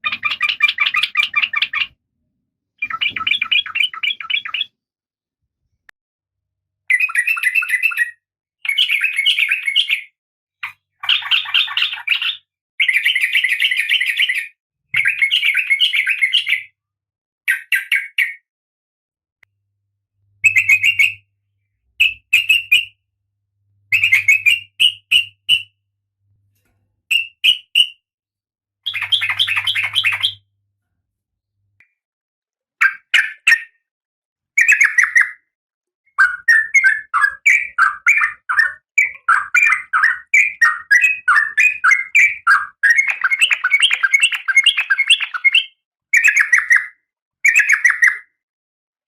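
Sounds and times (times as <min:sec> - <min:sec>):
bird chattering calls: 0:28.9 - 0:30.4.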